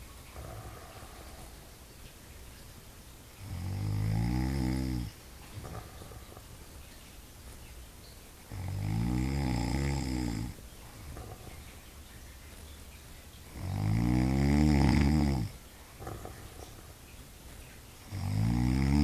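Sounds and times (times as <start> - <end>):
animal snoring: 0.0 - 1.8, 3.4 - 6.5, 8.5 - 11.6, 13.5 - 17.0, 18.0 - 19.0.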